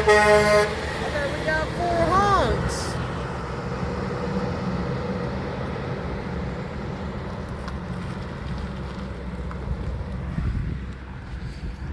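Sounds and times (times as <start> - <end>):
heavy trucks driving past: 0.0 - 11.9
tyre and road noise: 0.0 - 11.9.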